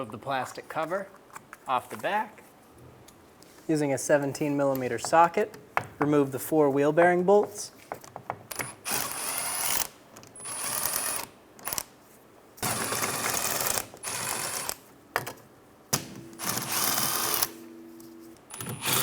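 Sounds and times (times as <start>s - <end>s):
air wrench running: 16.4s - 17.5s.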